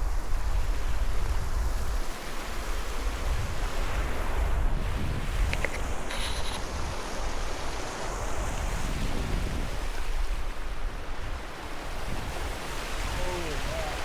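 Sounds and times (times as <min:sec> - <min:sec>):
wind buffeting microphone: 0:00.0 - 0:14.0
faint clicks: 0:05.4 - 0:06.7.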